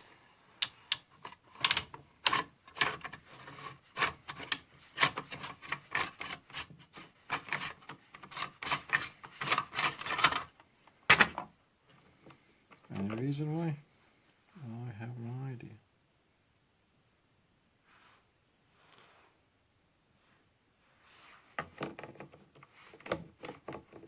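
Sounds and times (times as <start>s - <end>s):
plastic knob clicking: 0.6s - 3.0s.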